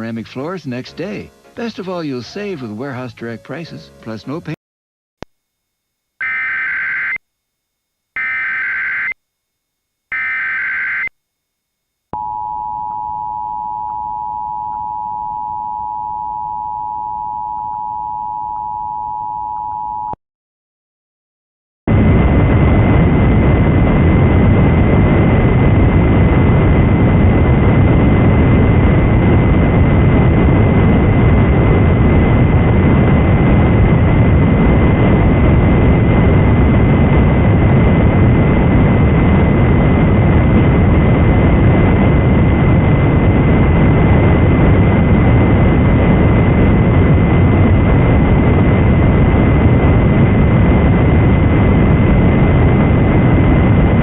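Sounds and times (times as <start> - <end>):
loud static noise with rumble: 0.0 - 3.3, 21.9 - 54.0.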